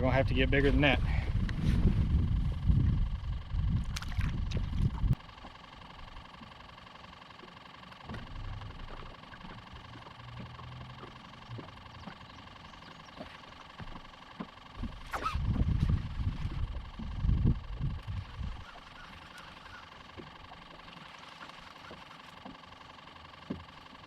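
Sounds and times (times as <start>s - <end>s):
boat machinery humming with whine: 0.0s - 24.0s
loud low rumble: 14.8s - 18.6s.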